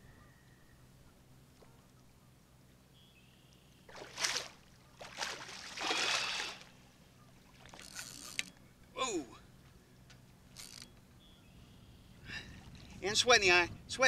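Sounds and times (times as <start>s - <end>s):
fish thrashing and splashing water: 3.9s - 6.8s.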